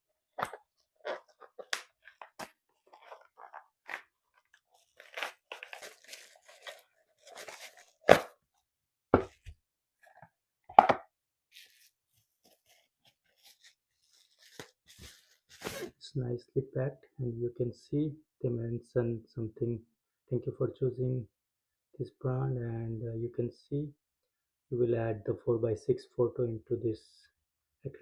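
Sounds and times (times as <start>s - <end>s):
cardboard box crinkling and rustling: 2.1s - 8.2s.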